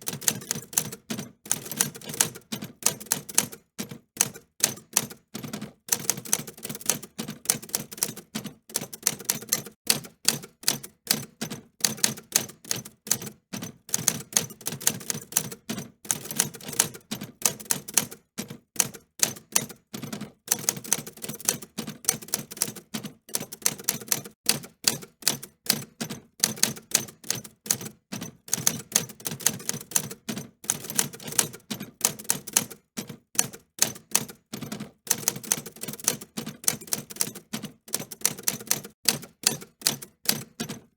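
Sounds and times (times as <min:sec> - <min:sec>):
typewriter key clicks: 0:35.1 - 0:40.8.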